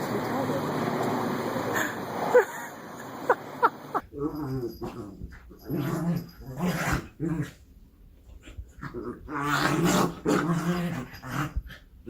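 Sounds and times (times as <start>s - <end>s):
dog growling: 4.0s - 7.6s, 8.4s - 11.9s.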